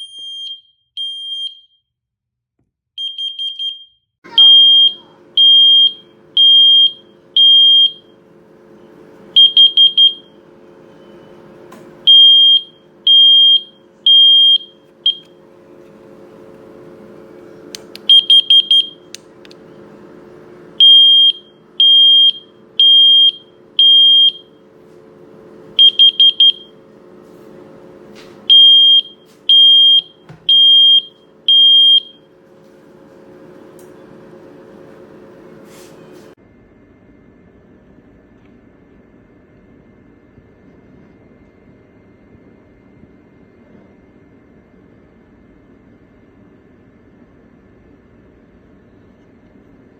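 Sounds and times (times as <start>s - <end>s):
smoke alarm beeping: 0.0s - 1.8s, 3.0s - 8.2s, 9.3s - 11.4s, 12.0s - 15.4s, 17.9s - 19.2s, 20.8s - 24.7s, 25.7s - 26.8s, 28.4s - 32.4s.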